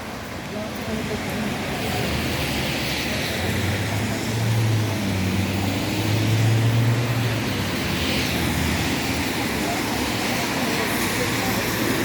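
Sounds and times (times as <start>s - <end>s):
traffic hiss on wet street: 0.0s - 12.0s
vehicle engine humming: 0.0s - 12.0s.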